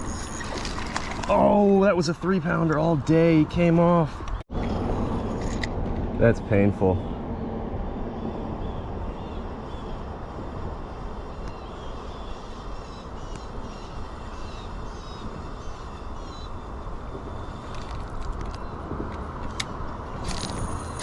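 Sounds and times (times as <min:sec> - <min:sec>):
low rumbling noise: 0:04.4 - 0:21.0.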